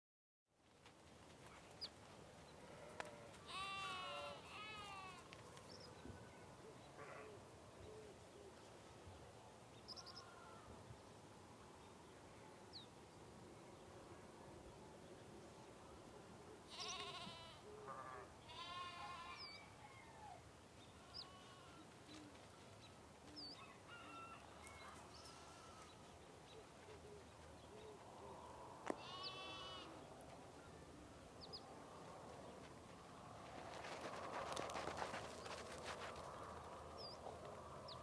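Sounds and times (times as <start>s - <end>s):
sheep bleating: 2.7s - 5.3s, 16.7s - 19.6s, 21.0s - 21.8s, 24.9s - 26.0s, 28.9s - 30.0s.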